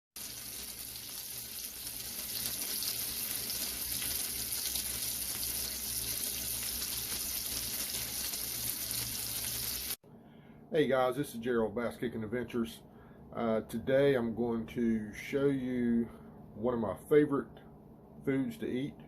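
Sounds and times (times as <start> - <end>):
fish sizzling on a grill: 0.2 - 10.0.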